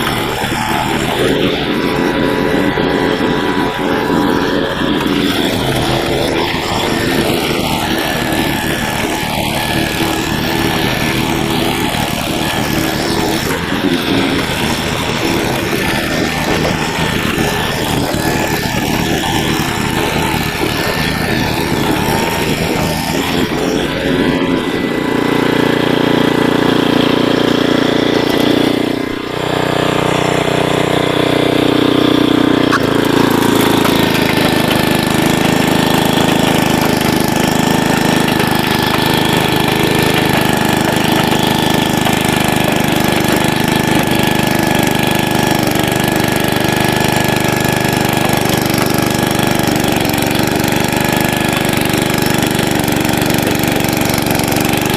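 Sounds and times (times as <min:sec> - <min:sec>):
rototiller engine running: 0:00.0 - 0:54.9.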